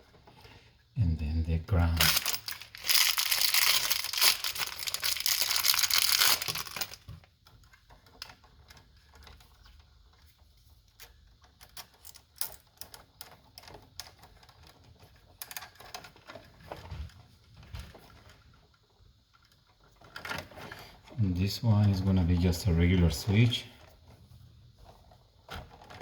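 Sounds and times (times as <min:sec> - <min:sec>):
crinkling rustle: 0:01.7 - 0:12.2.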